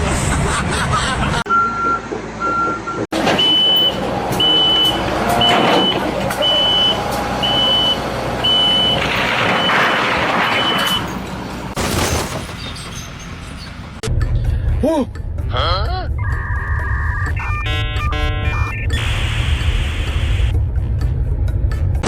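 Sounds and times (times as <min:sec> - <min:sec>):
reversing alarm beeping: 0:01.5 - 0:11.1, 0:16.6 - 0:20.5.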